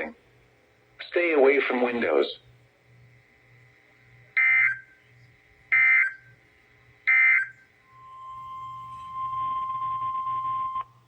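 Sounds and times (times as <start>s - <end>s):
buzzy digital data bursts: 7.8s - 11.0s
steady single tone: 7.8s - 11.0s.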